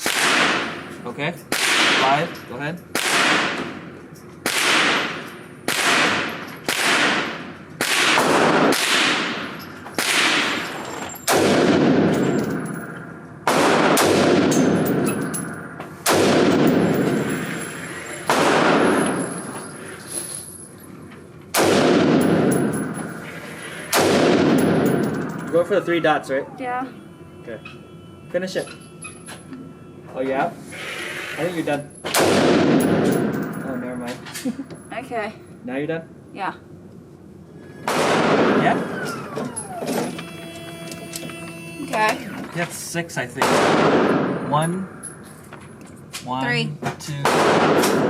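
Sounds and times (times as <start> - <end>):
rifle shots with ringing echo: 0.0 - 0.9, 1.5 - 2.3, 2.9 - 19.6, 21.5 - 25.9, 32.1 - 34.0, 37.8 - 39.8, 43.4 - 45.2, 47.2 - 48.0.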